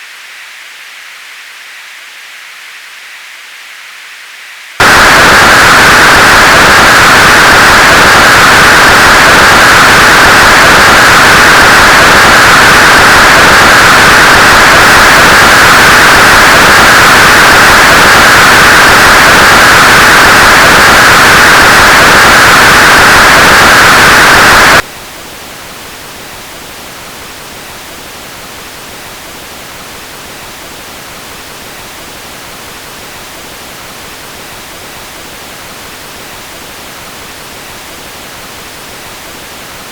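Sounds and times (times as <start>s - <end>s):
filtered white noise hiss: 0.0s - 18.0s, 24.8s - 39.9s.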